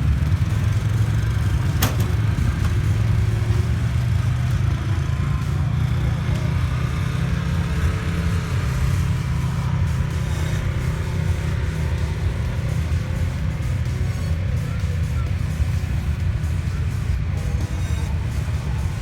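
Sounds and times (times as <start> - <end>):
race car engine rumbling: 0.0 - 19.0
sharp click: 1.8 - 2.9.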